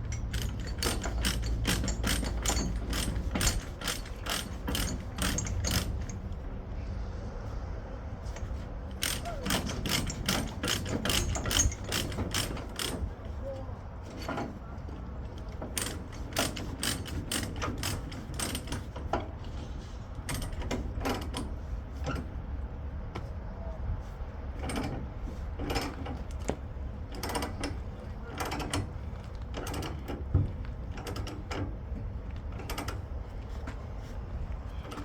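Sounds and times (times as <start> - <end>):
ratchet chain binder clicking: 0.0 - 6.4, 8.3 - 13.4, 15.4 - 19.3, 20.3 - 22.2, 25.6 - 33.6.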